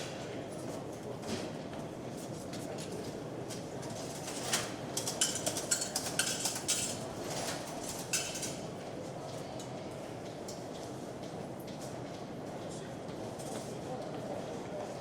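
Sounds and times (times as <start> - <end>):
low hubbub of voices: 0.0 - 4.8, 11.0 - 15.0.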